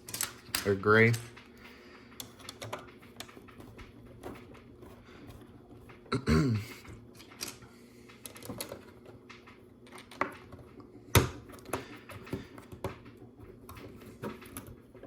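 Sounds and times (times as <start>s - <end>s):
plastic bricks clicking: 0.0s - 1.4s, 2.1s - 6.1s.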